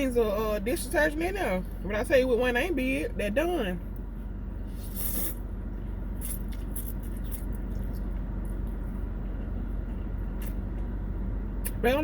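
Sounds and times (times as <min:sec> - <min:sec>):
steady low hum: 0:00.0 - 0:12.0
person slurping soup: 0:04.7 - 0:05.4.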